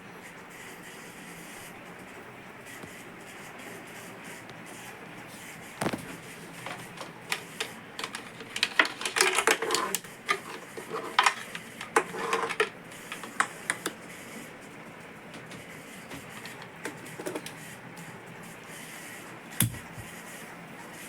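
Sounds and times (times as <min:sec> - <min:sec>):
hard parts clicking and clattering: 0:05.8 - 0:14.0, 0:15.2 - 0:18.1.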